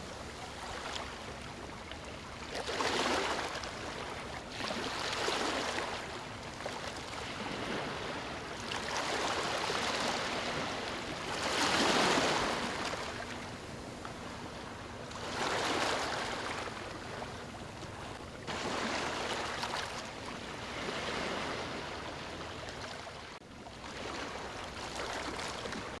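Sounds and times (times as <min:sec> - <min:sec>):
ocean waves breaking on beach: 0:00.0 - 0:26.0.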